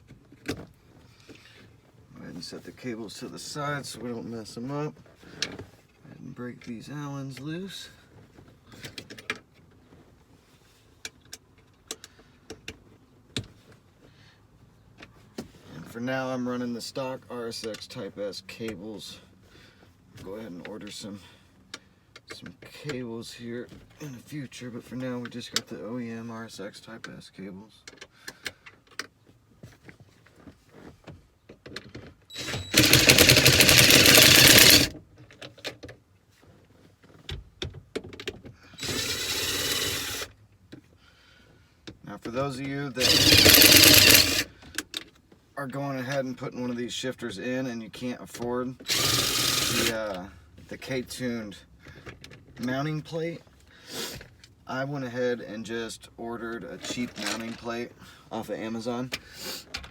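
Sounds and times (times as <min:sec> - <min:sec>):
cordless drill running: 0:32.4 - 0:34.9, 0:38.8 - 0:40.3, 0:43.0 - 0:44.5, 0:48.9 - 0:50.0
metallic clicks of allen wrench: 0:32.4 - 0:34.9.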